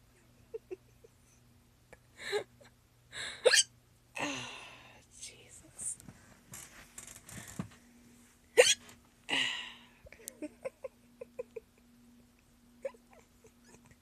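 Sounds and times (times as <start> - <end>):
person hiccuping: 3.5 - 3.7, 8.6 - 8.8
quiet giggles: 10.2 - 12.0, 12.8 - 14.0.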